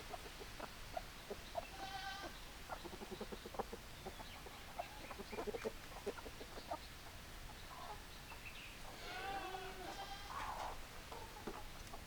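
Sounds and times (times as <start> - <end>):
hens clucking: 0.0 - 8.0, 8.8 - 12.0.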